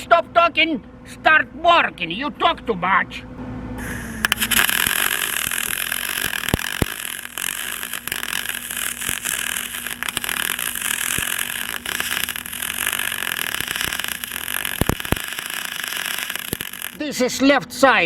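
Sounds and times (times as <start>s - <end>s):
welding arc crackling hiss: 3.8s - 17.2s.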